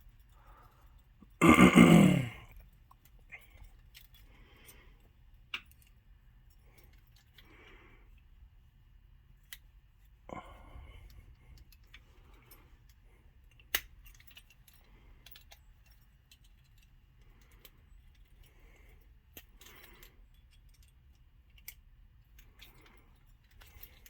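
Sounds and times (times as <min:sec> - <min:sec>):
small metal parts clicking: 0:11.6 - 0:24.0.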